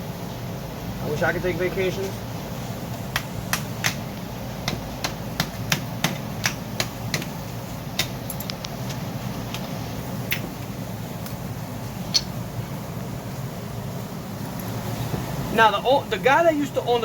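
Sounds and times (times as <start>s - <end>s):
steady low hum: 0.0s - 17.0s
hand tools clicking and tapping: 3.1s - 4.0s, 4.6s - 7.4s, 8.0s - 9.7s, 10.3s - 10.5s.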